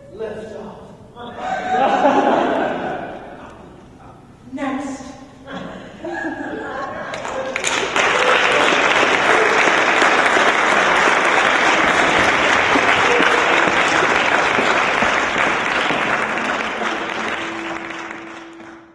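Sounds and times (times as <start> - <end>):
audience applauding: 7.0 - 18.9.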